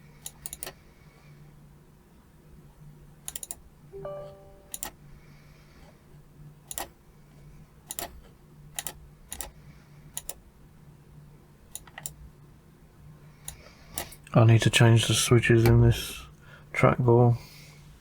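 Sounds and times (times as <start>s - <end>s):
trackball buttons clicking: 3.3s - 4.9s.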